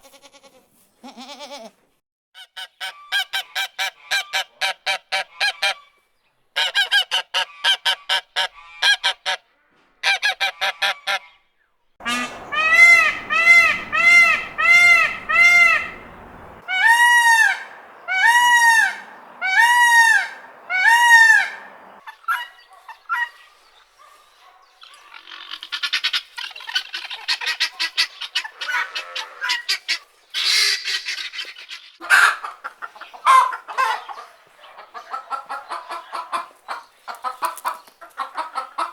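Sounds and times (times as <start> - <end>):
poultry clucking: 1.8 - 5.9, 6.6 - 9.4, 12.0 - 23.4, 24.0 - 38.9
geese honking: 12.0 - 22.5
poultry chattering calls: 12.0 - 23.4, 24.8 - 38.9.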